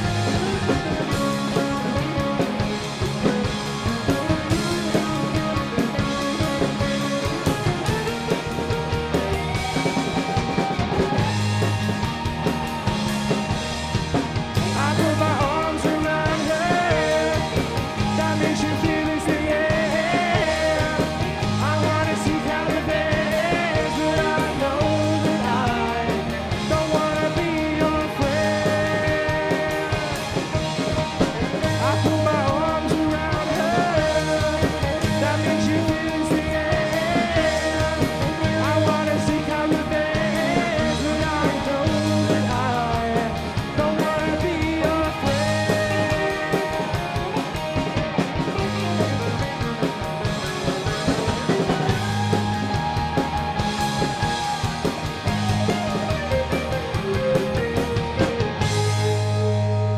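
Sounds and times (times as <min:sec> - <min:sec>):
rock band playing: 0:00.0 - 0:59.9
person singing: 0:14.7 - 0:47.3.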